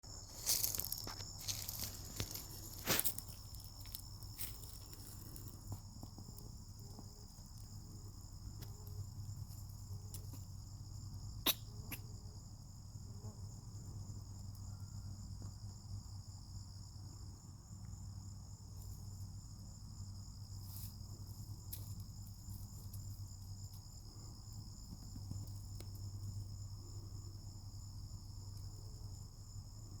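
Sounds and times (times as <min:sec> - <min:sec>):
crickets trilling: 0:00.0 - 0:30.0
faint ticks: 0:08.6 - 0:10.5, 0:24.8 - 0:26.4
sharp click: 0:11.5 - 0:12.0.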